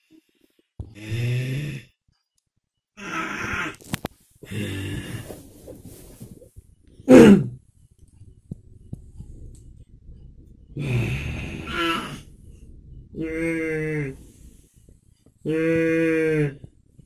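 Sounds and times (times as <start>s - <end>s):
person making moo-like sounds: 3.0s - 3.8s, 10.8s - 12.2s, 13.2s - 14.3s, 15.4s - 16.7s.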